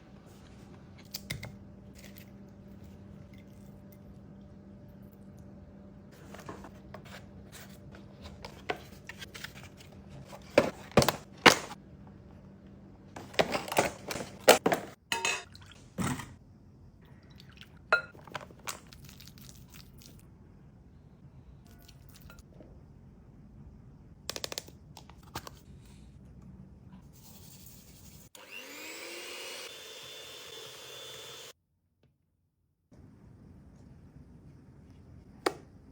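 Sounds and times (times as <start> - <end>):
low steady hum: 0.0 - 27.8
kitchen appliance motor whine: 28.4 - 31.6.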